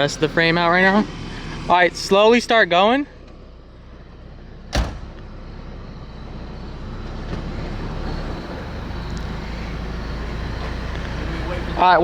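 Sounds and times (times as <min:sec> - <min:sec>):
road noise: 0:00.0 - 0:12.0
car engine running: 0:03.2 - 0:12.0
sharp knock: 0:04.8 - 0:05.2.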